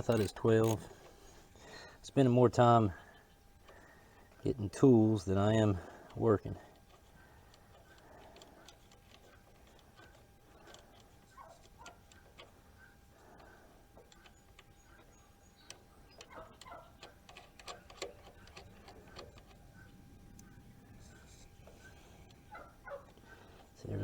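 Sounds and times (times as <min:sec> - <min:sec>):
hand tools clicking and tapping metal: 0:00.0 - 0:01.2, 0:02.9 - 0:20.6.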